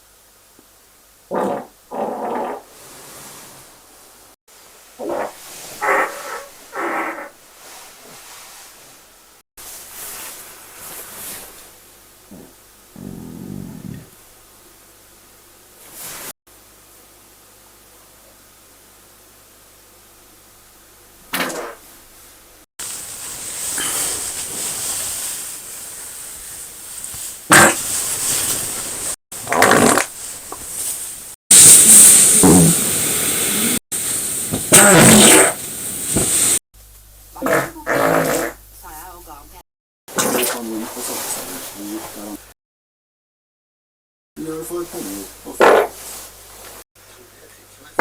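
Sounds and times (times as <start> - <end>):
steady hiss: 0.0 - 39.6, 40.6 - 42.5, 44.4 - 48.0
short pitched farts: 1.3 - 2.7, 5.0 - 7.3, 12.3 - 14.1, 21.3 - 21.9, 27.5 - 28.5, 29.4 - 30.1, 31.5 - 33.0, 34.5 - 36.3, 37.4 - 38.6, 45.6 - 46.1.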